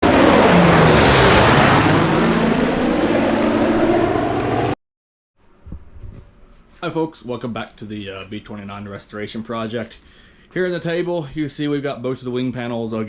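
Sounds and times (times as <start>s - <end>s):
propeller aircraft engine drone: 0.0s - 4.8s.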